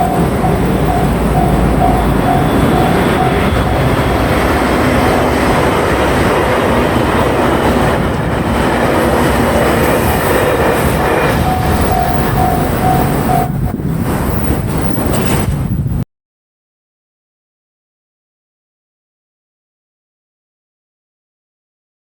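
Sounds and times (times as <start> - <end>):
level crossing warning bell: 0.0 - 15.4
train wheels rushing on rail: 0.0 - 15.9.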